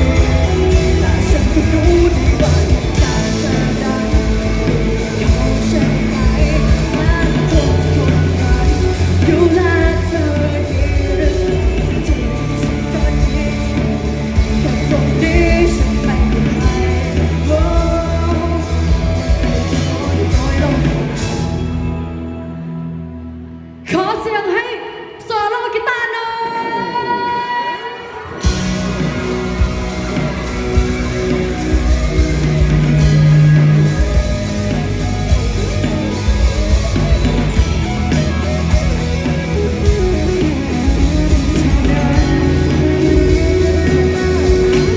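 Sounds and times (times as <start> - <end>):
bass and drums: 0.0 - 22.7, 28.2 - 44.9
person singing: 0.0 - 22.7, 23.8 - 44.9
live rock band playing: 0.0 - 24.1, 27.6 - 44.9
electric guitar: 0.0 - 24.4, 26.4 - 44.9.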